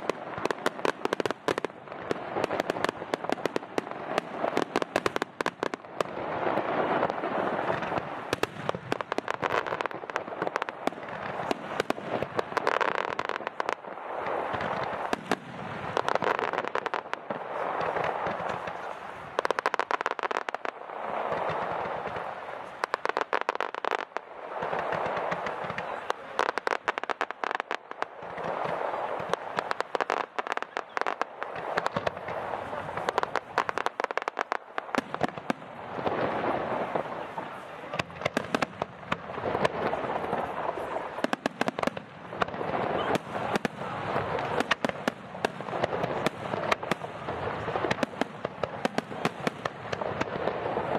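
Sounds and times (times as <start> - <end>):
fireworks crackling and popping: 0.0 - 50.9.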